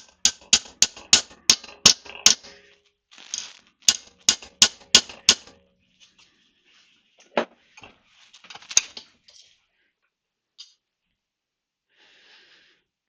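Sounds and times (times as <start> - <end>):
sharp metallic tool clicks: 0.0 - 2.5, 3.3 - 5.5.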